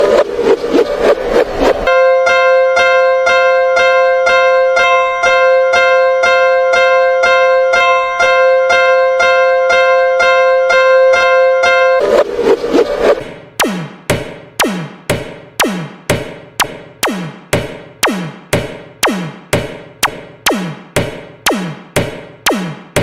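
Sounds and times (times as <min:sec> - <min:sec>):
railroad crossing bell ringing: 0:01.9 - 0:12.0.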